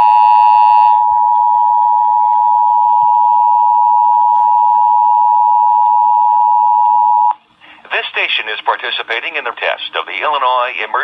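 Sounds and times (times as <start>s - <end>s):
two-tone alarm from small radio: 0.0s - 7.3s.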